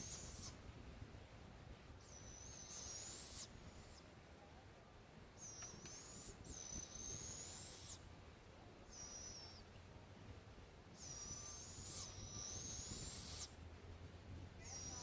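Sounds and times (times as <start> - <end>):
owls raspy begging screeches: 0.0 - 0.6, 2.0 - 4.0, 5.4 - 8.0, 8.9 - 9.6, 11.0 - 13.6, 14.6 - 15.0.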